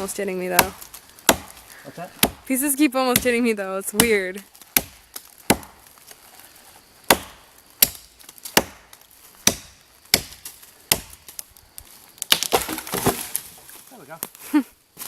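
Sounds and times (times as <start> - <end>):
wood being chopped: 0.0 - 2.5, 4.0 - 6.2, 7.0 - 11.5, 12.2 - 13.6.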